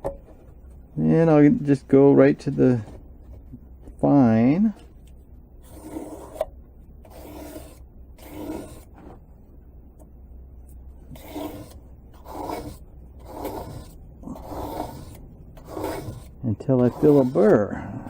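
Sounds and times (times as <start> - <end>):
knife scraping on sharpening stone: 7.1 - 8.9, 11.2 - 17.6.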